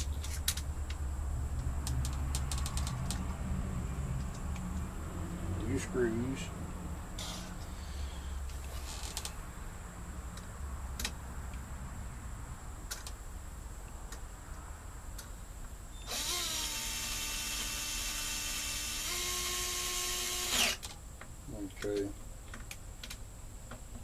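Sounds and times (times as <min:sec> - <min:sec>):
cordless drill driving screws: 0:16.1 - 0:20.9.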